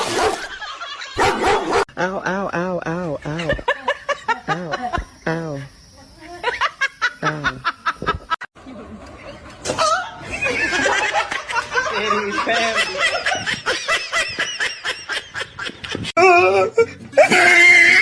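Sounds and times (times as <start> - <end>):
person laughing hard: 2.0 - 5.1, 7.0 - 8.4, 9.8 - 18.0.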